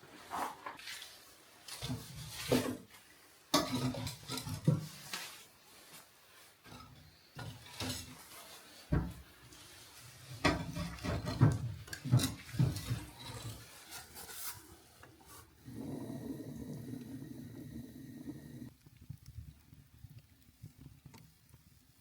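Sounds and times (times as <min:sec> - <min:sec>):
firewood knocking and scraping: 0:10.4 - 0:14.4.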